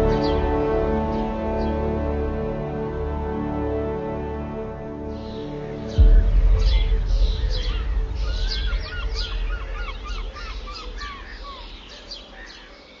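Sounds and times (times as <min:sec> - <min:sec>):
birds calling and chirping: 0:05.0 - 0:13.0
loud low rumble: 0:05.5 - 0:12.6.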